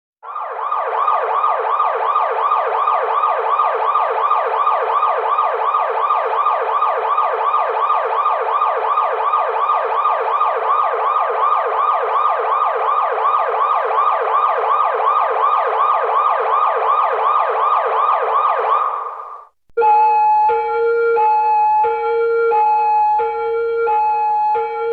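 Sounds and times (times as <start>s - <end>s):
police siren yelping: 0.2s - 24.9s.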